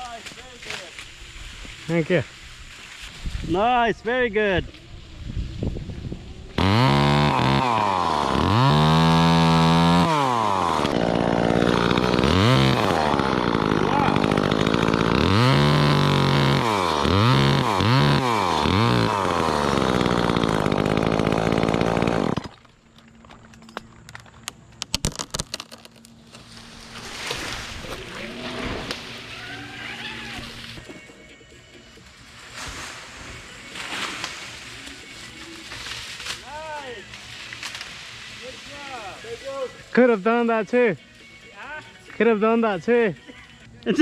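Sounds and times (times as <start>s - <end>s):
chainsaw revving: 6.6s - 22.5s.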